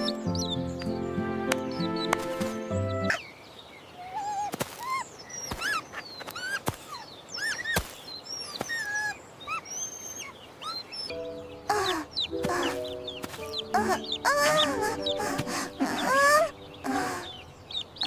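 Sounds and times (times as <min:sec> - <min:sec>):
background music: 0:00.0 - 0:03.2, 0:11.1 - 0:17.6
small birds chirping: 0:00.0 - 0:18.0.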